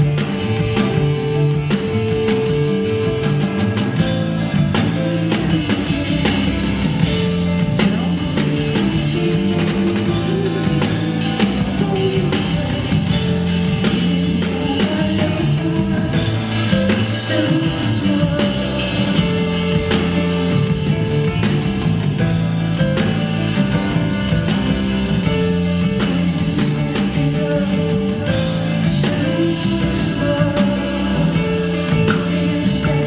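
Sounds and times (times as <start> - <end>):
live rock band playing: 0.0 - 33.0.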